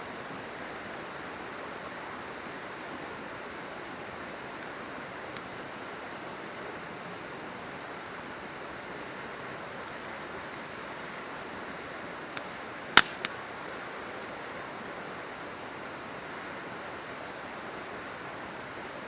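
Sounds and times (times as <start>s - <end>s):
river rushing: 0.0s - 19.0s
campfire crackling and popping: 4.5s - 5.8s, 8.6s - 11.5s, 12.3s - 13.5s.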